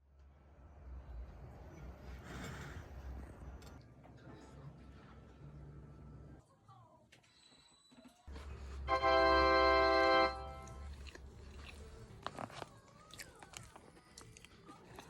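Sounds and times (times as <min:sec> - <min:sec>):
loud steady tone: 0:08.9 - 0:10.9
food being chewed: 0:10.6 - 0:15.0.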